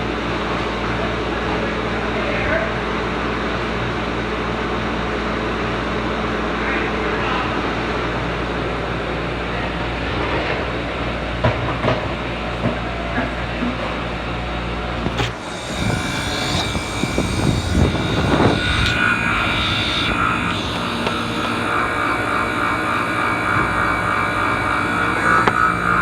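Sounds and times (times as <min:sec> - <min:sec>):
high steady machine tones: 0:15.0 - 0:26.0
uneven machine rumbling: 0:15.0 - 0:26.0
ice machine compressor hum: 0:15.1 - 0:26.0.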